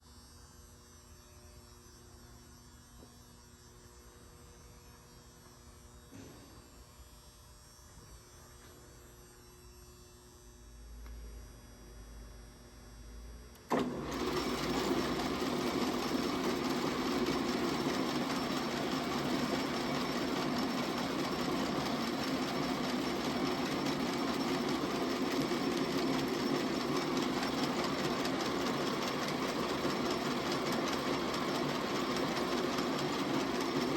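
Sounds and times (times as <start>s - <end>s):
metal lathe running: 13.7s - 33.9s.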